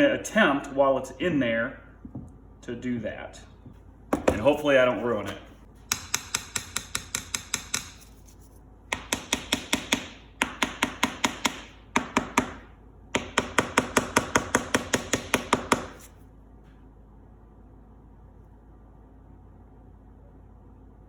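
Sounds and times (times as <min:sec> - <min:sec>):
hand tool rapid sharp clicks: 0:05.9 - 0:08.0.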